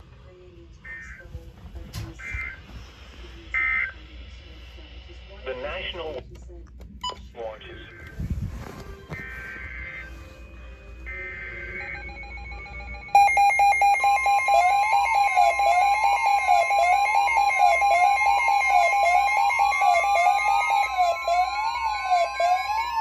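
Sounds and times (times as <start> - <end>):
electronic alarm warble: 11.0 - 23.0.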